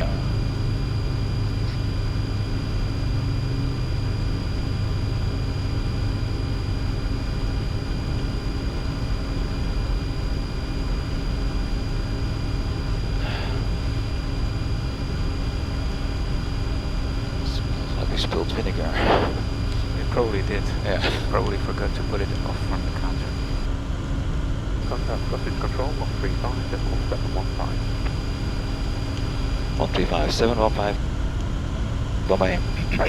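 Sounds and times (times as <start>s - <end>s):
high whine: 0.0s - 33.0s
jet engine drone: 0.0s - 33.0s
low hums: 0.0s - 33.0s.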